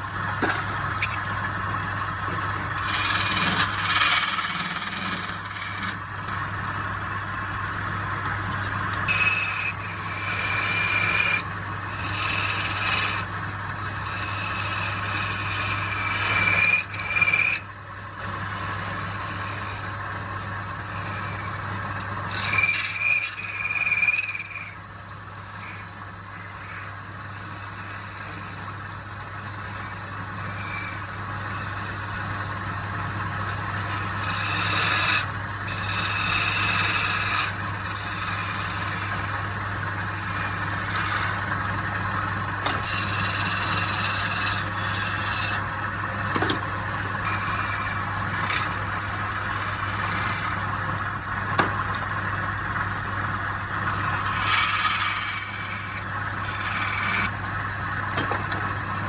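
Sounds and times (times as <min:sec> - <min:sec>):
tool scraping spinning wood: 0:00.0 - 0:59.0
woodturning lathe humming: 0:00.0 - 0:59.0.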